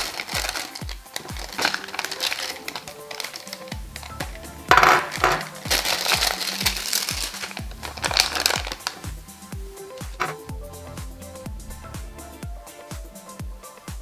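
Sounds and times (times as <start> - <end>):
crinkly handling noises: 0.0 - 9.2, 9.9 - 10.4
music with thumping beat: 0.0 - 14.0.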